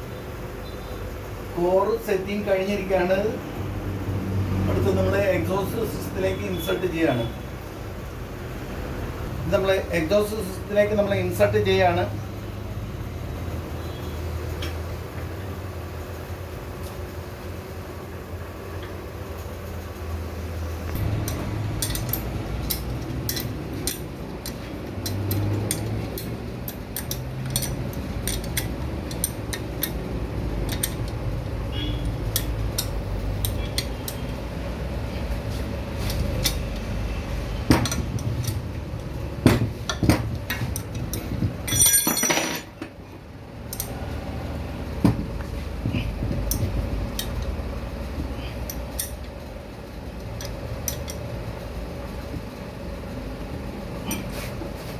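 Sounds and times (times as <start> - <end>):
low workshop hum: 0.0 - 54.9
metal tools clinking and tapping: 20.9 - 30.0, 30.6 - 34.3, 36.0 - 37.0, 37.7 - 44.0, 45.0 - 47.6, 48.6 - 49.3, 50.2 - 51.3
metal clatter: 21.0 - 30.0, 39.4 - 42.9.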